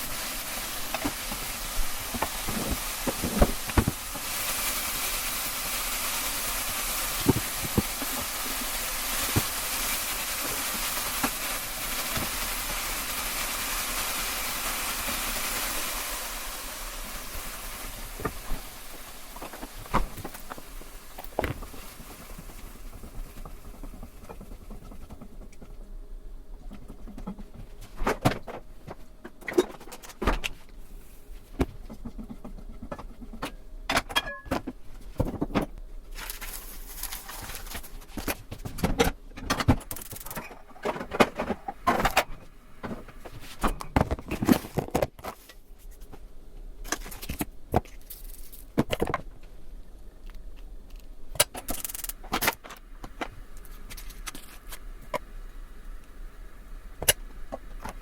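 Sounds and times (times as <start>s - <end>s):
kitchen utensils clinking: 34.0s - 34.6s.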